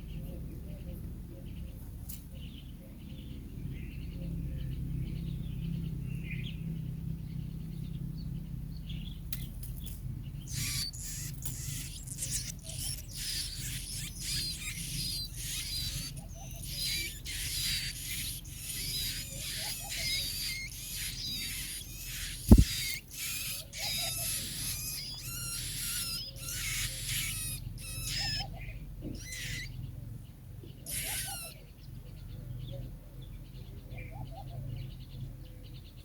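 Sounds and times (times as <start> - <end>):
baby bird cheeping: 10.4 - 29.9, 30.8 - 31.7.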